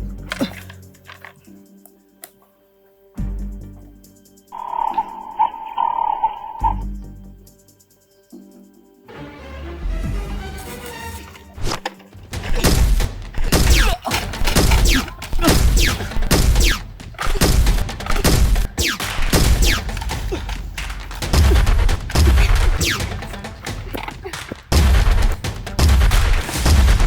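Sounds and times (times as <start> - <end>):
action music: 3.2 - 27.0
gunshot effects with bass thuds: 12.5 - 20.3, 21.2 - 23.3, 24.7 - 27.0.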